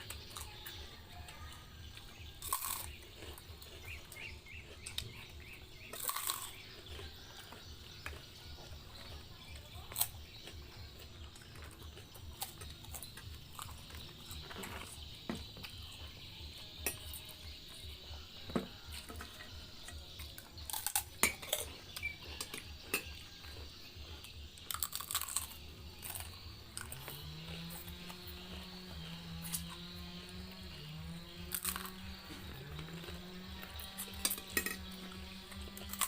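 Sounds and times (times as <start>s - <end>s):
cutlery clinking against dish: 16.8s - 17.3s, 21.0s - 23.4s, 34.1s - 34.9s.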